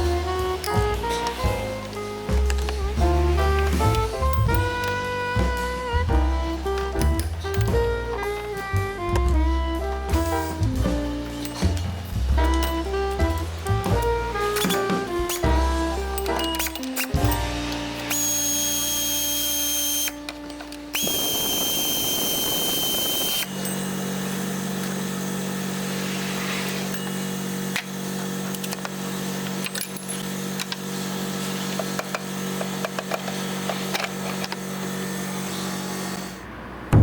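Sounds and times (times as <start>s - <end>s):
power tool high whine: 18.0s - 20.3s, 20.9s - 36.4s.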